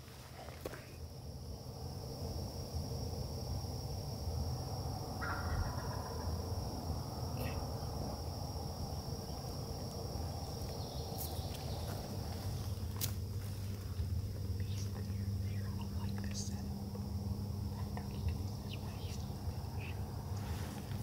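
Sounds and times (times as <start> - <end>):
high insect hum: 0.0 - 21.0
turkey gobbling: 5.2 - 6.5.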